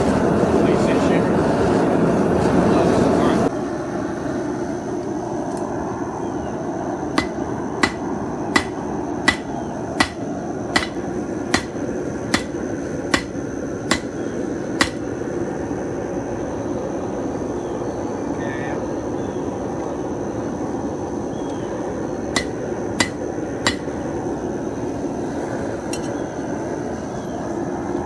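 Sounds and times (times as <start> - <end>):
steady rushing noise: 0.0 - 15.0
hammer striking metal on anvil: 7.2 - 14.1, 14.8 - 15.0, 22.3 - 23.9.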